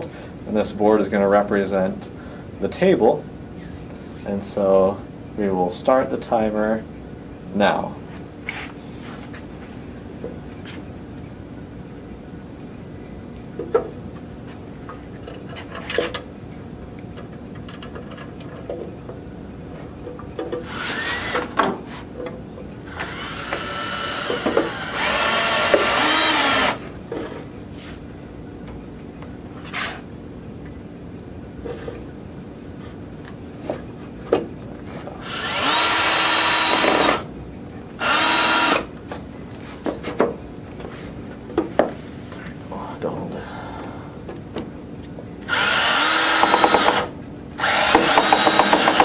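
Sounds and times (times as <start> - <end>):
power drill driving screws: 20.6 - 21.6, 22.8 - 26.8, 35.2 - 37.3, 38.0 - 38.9, 45.4 - 49.0.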